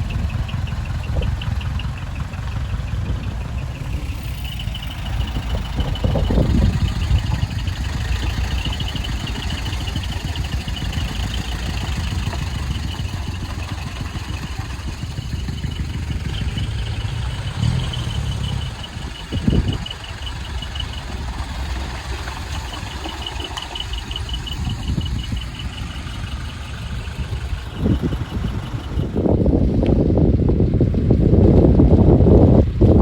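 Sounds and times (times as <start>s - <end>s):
truck diesel engine idling: 0.0s - 33.0s
high-pitched pulsing beep: 2.7s - 29.0s.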